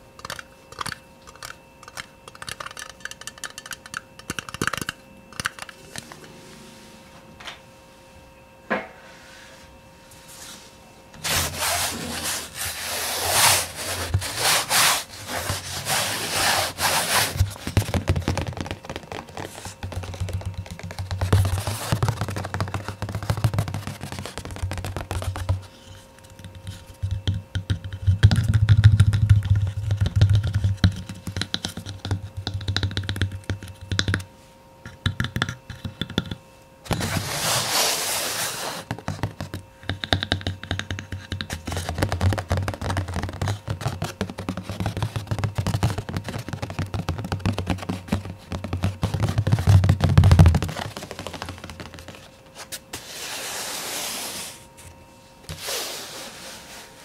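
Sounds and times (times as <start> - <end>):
fast tapping close to microphone: 0.2 - 5.7, 17.3 - 25.7, 26.3 - 36.4, 38.9 - 52.3
scratching and rubbing: 11.2 - 27.2, 36.9 - 39.5, 41.1 - 54.6.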